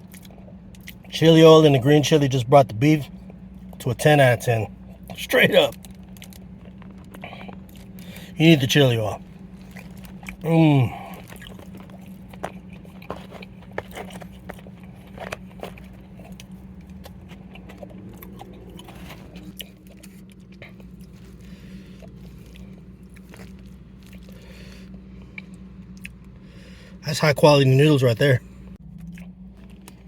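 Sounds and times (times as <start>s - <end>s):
steady low hum: 0.0s - 30.0s
person chewing noodles: 4.8s - 8.4s, 9.2s - 26.3s.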